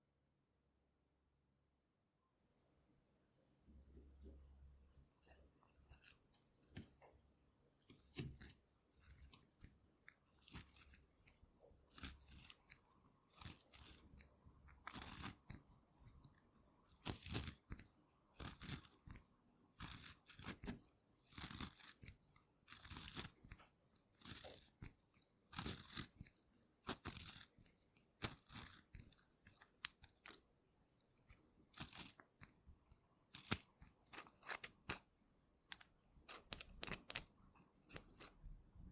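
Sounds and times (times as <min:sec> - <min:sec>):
pencil sharpening scrapes: 0:10.2 - 0:11.0, 0:11.9 - 0:15.6, 0:18.4 - 0:19.1, 0:19.8 - 0:30.4, 0:31.1 - 0:32.5.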